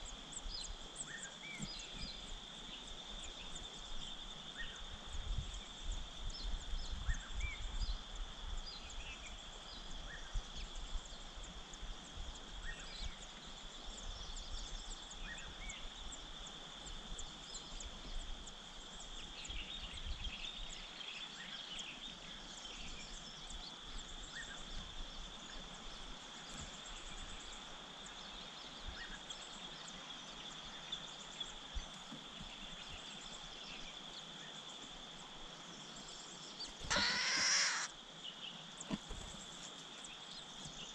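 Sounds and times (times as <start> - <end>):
wind rumble on microphone: 1.5 - 21.0
birds chirping: 35.5 - 40.9.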